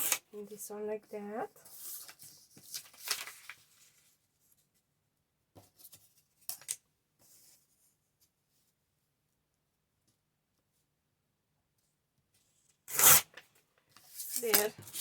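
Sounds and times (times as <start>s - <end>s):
paper rustling: 1.6s - 4.6s, 12.9s - 15.0s
paper crackling: 1.8s - 4.1s.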